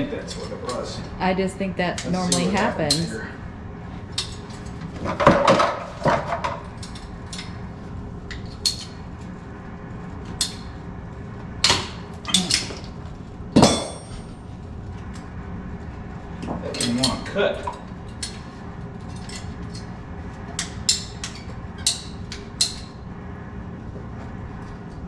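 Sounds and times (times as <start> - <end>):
hard objects knocking and clattering: 5.0 - 6.7
ringing metallic clank: 13.6 - 14.4.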